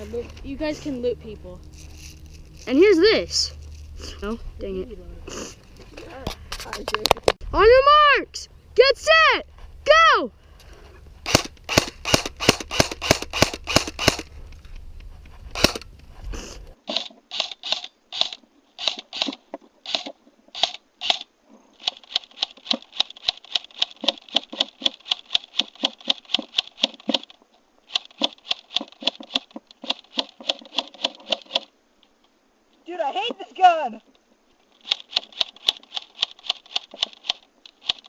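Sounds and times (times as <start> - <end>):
airsoft gun shots: 11.2 - 14.3, 15.5 - 15.8
rapid automatic airsoft fire: 11.2 - 14.3.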